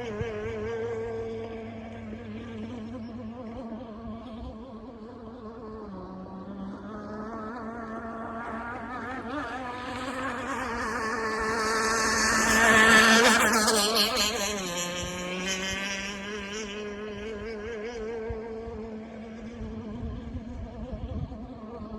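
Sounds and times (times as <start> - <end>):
model boat engine passing: 0.0 - 21.9.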